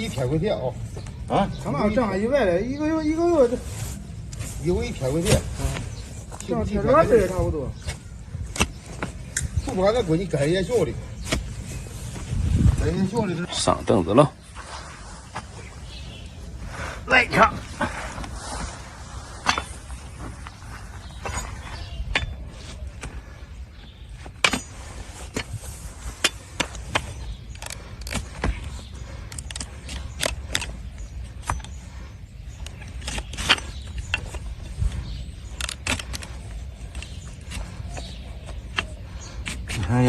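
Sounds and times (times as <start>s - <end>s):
tools cutting and scraping hoof: 4.2s - 12.2s, 19.4s - 20.2s, 21.1s - 23.2s, 24.2s - 40.0s.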